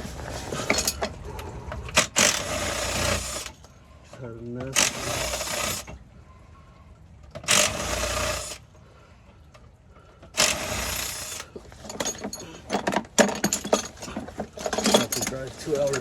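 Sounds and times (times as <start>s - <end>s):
metal tools clicking and clanking: 0.4s - 2.5s, 10.4s - 16.0s.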